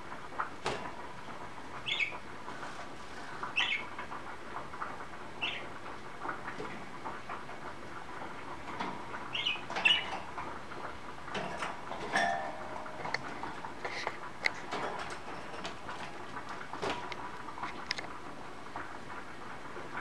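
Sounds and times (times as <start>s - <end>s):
budgerigars chirping: 1.8s - 2.2s, 3.6s - 3.9s, 5.4s - 5.7s, 9.3s - 10.1s.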